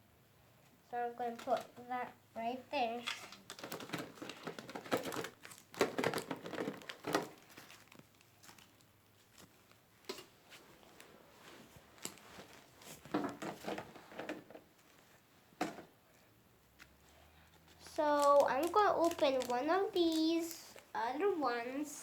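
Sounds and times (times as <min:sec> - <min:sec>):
cards and foil packs rustling: 0:02.8 - 0:15.0, 0:17.5 - 0:22.0.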